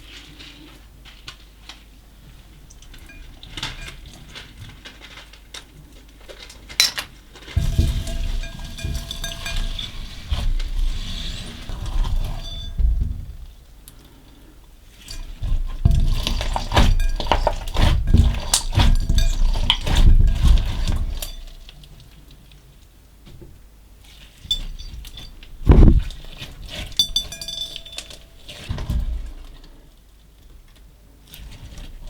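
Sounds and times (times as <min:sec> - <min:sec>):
light clinks against bowl: 0:07.6 - 0:10.0, 0:24.5 - 0:25.4, 0:26.9 - 0:28.7
slime squished and stirred: 0:14.9 - 0:22.1
thump: 0:25.6 - 0:26.2.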